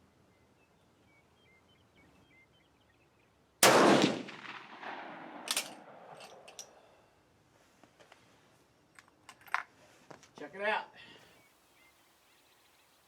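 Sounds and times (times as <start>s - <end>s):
rifle shot with echo: 3.6s - 6.8s
light metallic clicks: 5.4s - 6.8s
sharp metallic clack: 5.4s - 6.8s.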